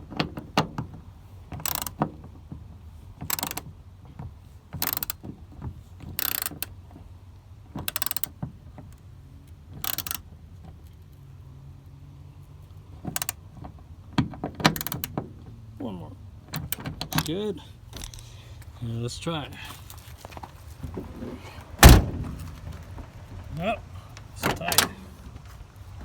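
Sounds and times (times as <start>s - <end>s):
hand ratchet clicking: 1.6s - 2.0s, 3.3s - 3.6s, 4.8s - 5.2s, 6.2s - 6.7s, 7.9s - 8.3s, 9.8s - 10.2s, 14.8s - 15.1s.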